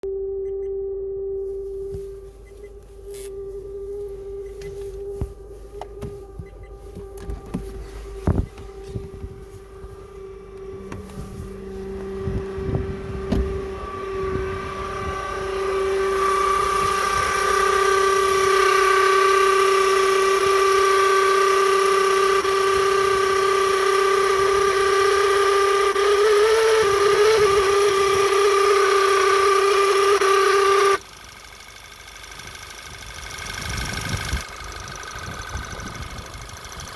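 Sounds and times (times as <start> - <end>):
engine running: 0.0 - 36.9
vehicle squealing: 1.7 - 31.0.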